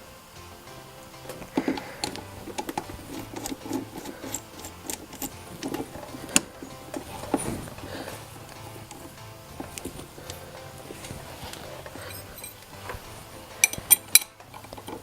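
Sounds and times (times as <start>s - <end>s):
chain riveting tool clicks: 12.0s - 15.0s.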